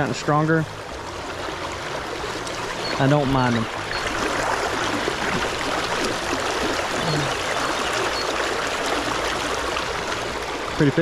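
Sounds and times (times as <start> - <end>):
river water rushing: 0.0 - 11.0.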